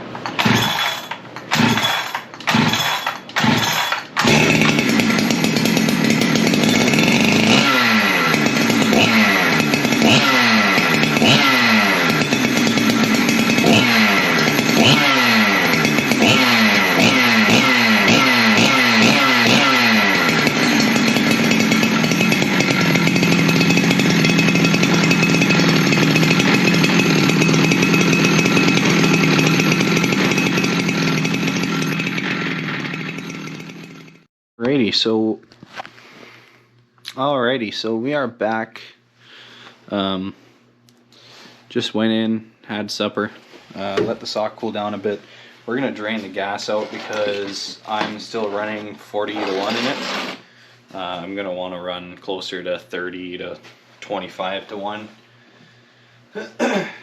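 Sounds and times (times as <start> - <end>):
chainsaw starting and revving: 0.2 - 34.3, 45.8 - 52.0.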